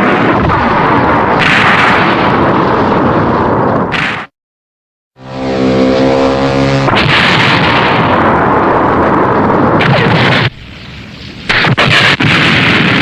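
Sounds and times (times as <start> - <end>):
explosion rumble: 0.0 - 4.3, 6.3 - 13.0
loud blasts: 0.0 - 4.3, 5.2 - 13.0
steady pitched hum: 5.2 - 7.4.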